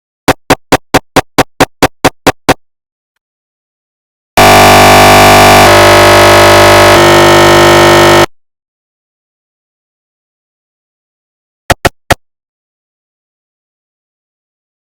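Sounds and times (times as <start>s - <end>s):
mri scanner rapid knocks: 0.3s - 2.6s, 11.7s - 12.2s
mri scanner loud steady buzz: 4.4s - 8.3s.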